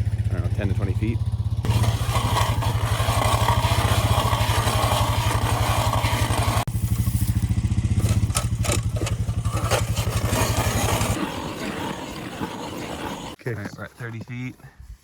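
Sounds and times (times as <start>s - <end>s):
small gasoline engine running: 0.0s - 13.4s.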